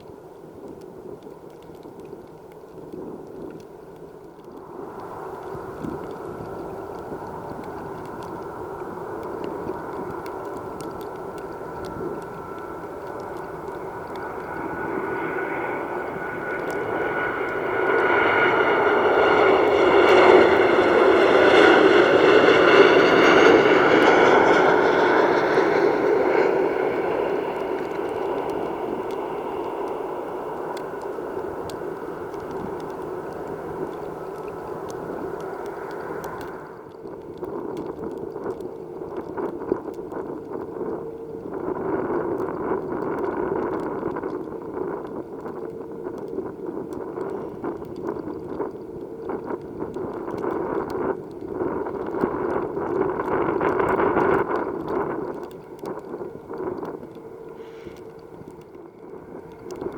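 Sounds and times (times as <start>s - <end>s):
faint steady drone: 0.0s - 59.9s
wind buffeting microphone: 0.0s - 59.9s
jet engines whining: 4.9s - 37.4s.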